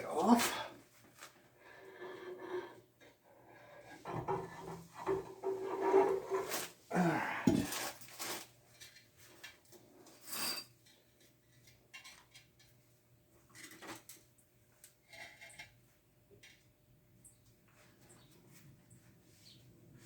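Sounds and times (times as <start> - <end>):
metal scraping: 4.0 - 6.7.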